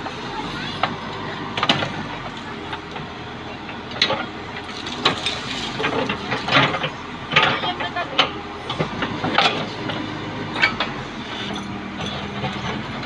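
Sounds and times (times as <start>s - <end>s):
diesel engine running: 0.0s - 13.0s
digging knocks and clanks: 3.7s - 13.0s.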